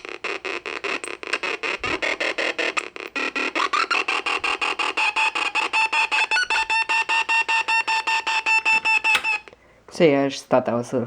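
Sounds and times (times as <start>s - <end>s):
electronic beeping from speaker: 5.0s - 9.5s.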